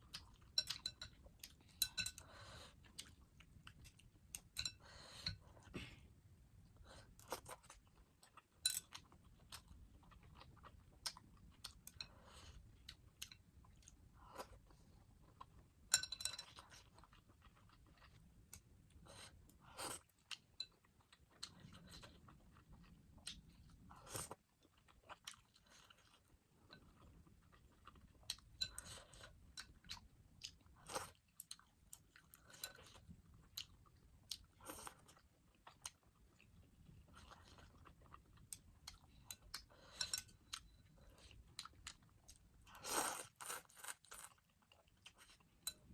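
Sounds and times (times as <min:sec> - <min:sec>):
person chewing food: 0:00.0 - 0:06.0, 0:06.7 - 0:45.9.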